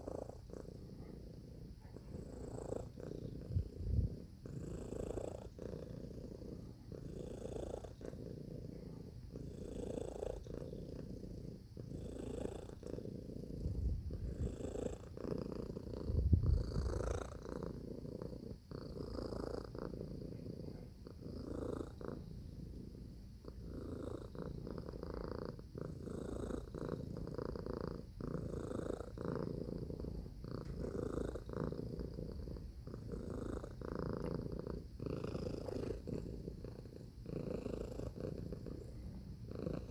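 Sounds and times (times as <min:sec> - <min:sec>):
cat purring: 0:00.0 - 0:39.9.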